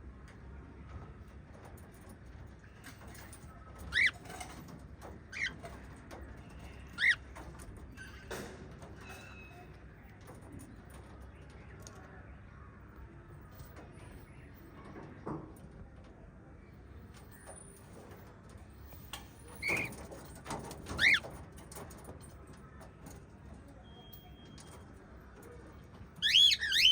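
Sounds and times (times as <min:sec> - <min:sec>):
parrots chirping: 0:03.9 - 0:04.2, 0:07.0 - 0:07.2, 0:21.0 - 0:21.2, 0:26.2 - 0:26.9.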